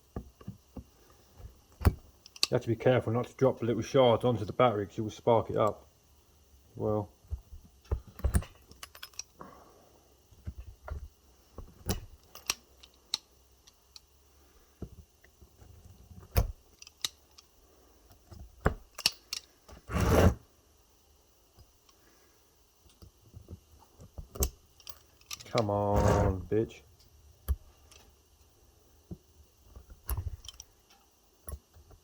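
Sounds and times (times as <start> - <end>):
noisy rasp: 19.8 - 20.4, 25.7 - 26.5.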